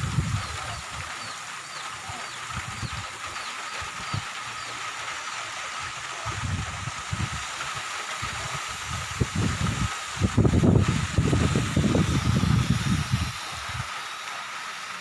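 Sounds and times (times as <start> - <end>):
wind buffeting microphone: 0.0 - 1.3, 2.5 - 4.3, 6.2 - 7.5, 8.2 - 13.9
rain hissing: 0.0 - 15.0
faint chirps: 0.4 - 5.6.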